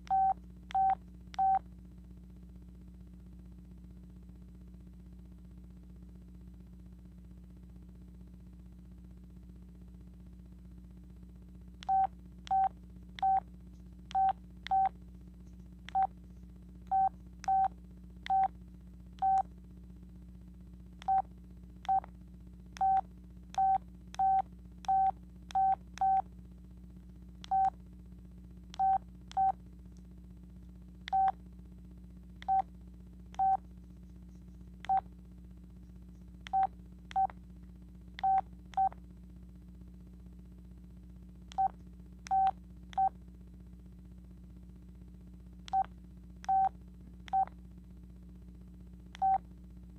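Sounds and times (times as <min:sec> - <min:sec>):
phone keypad beeps: 0:00.0 - 0:01.6, 0:11.9 - 0:13.4, 0:14.1 - 0:14.9, 0:19.2 - 0:19.4, 0:22.8 - 0:23.0, 0:23.6 - 0:26.2, 0:27.5 - 0:27.7, 0:28.8 - 0:29.6, 0:31.1 - 0:31.4, 0:46.5 - 0:46.7, 0:49.2 - 0:49.4.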